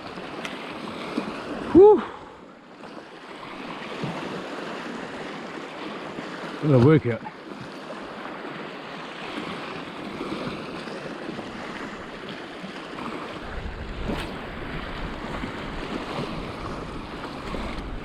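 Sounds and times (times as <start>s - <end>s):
sea waves washing against rocks: 0.0s - 18.0s
wind buffeting microphone: 13.0s - 18.0s.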